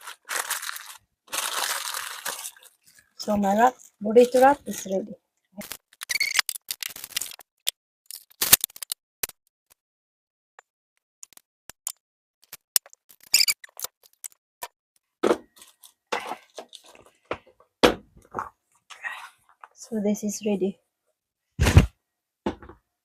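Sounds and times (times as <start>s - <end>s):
kitchen items being handled: 0.0s - 7.4s.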